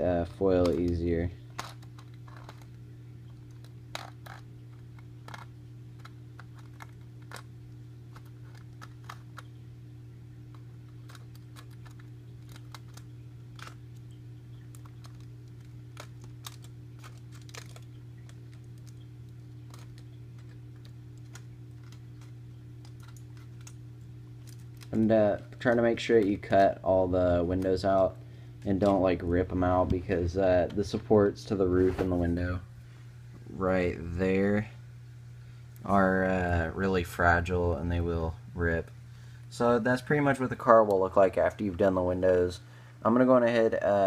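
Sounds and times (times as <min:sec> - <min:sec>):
steady low hum: 0:00.0 - 0:44.0
knife clicking and scratching foil: 0:08.1 - 0:09.5, 0:10.5 - 0:14.0, 0:14.7 - 0:23.8.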